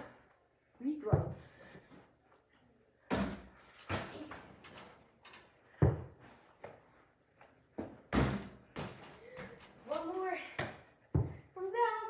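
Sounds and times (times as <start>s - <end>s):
basketball bouncing: 5.8s - 6.1s, 10.6s - 11.4s.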